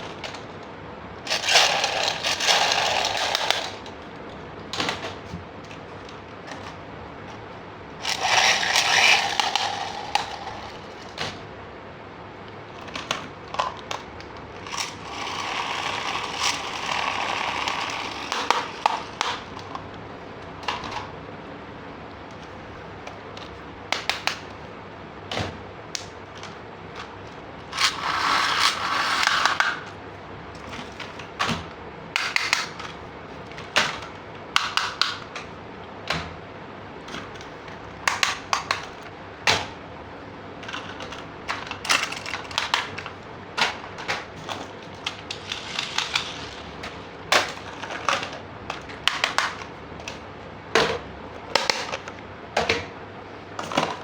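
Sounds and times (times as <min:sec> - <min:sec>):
plastic toy parts clicking: 0:01.3 - 0:03.9, 0:08.0 - 0:11.3, 0:12.8 - 0:19.8
rustling scrape: 0:44.5 - 0:48.1.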